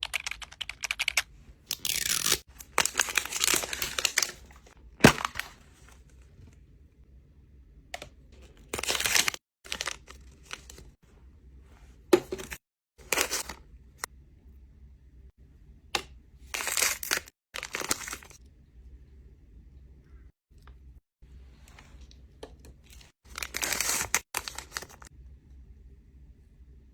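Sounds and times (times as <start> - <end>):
plastic packaging tearing and crinkling: 1.7 - 5.5, 8.6 - 10.8, 23.3 - 25.1.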